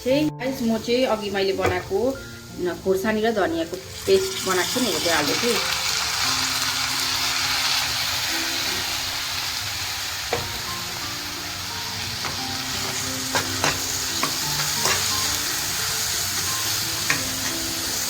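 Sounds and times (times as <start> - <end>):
onions sizzling in hot oil: 0.0 - 18.0
spatula scraping a pan: 12.2 - 15.3.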